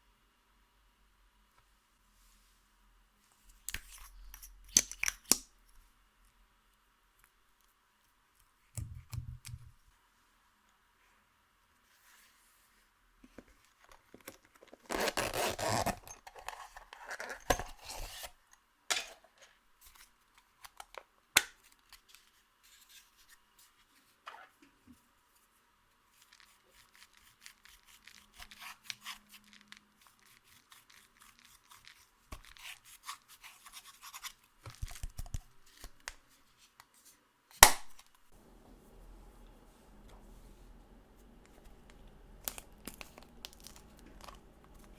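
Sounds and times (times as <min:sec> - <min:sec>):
slime crackling and scraping: 0:26.1 - 0:35.9, 0:42.4 - 0:44.9.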